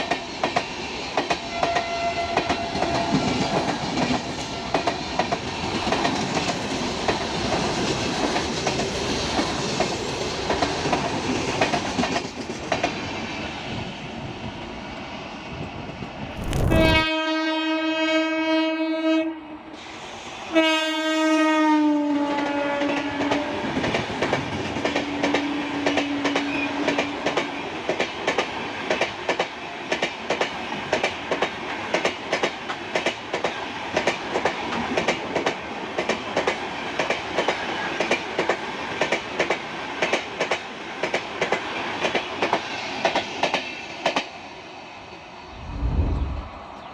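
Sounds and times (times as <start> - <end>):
train horn blasts: 17.1 - 19.5, 20.5 - 23.5.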